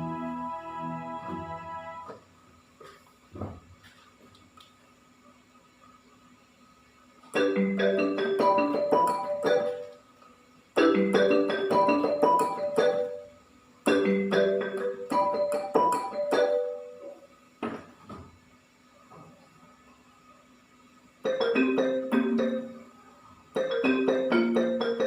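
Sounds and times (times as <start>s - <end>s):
keyboard ringtone melody: 7.4s - 10.0s, 10.8s - 17.2s, 21.2s - 23.0s, 23.6s - 25.0s.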